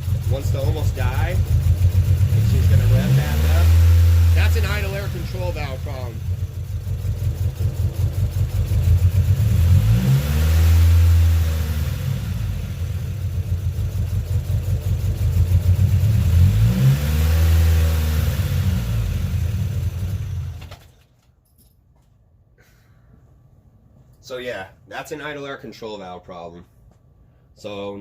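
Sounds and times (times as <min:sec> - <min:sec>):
car engine idle surging: 0:00.0 - 0:10.0, 0:10.7 - 0:16.7.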